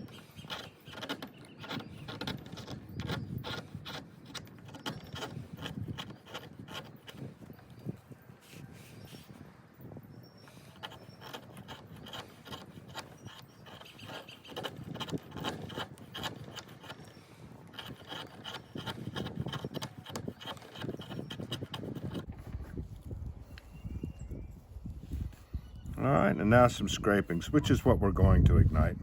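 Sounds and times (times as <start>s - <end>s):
knife scraping wood shavings: 0.0s - 7.4s, 10.5s - 22.3s.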